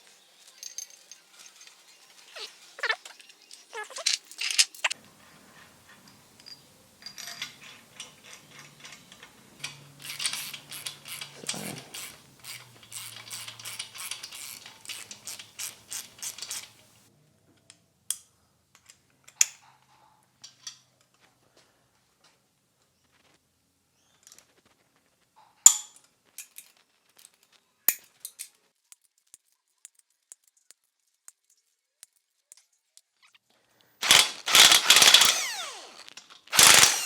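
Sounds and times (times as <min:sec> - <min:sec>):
ratchet wrench clicking: 0:10.0 - 0:16.8, 0:34.0 - 0:37.0
short squeaks: 0:10.0 - 0:16.8.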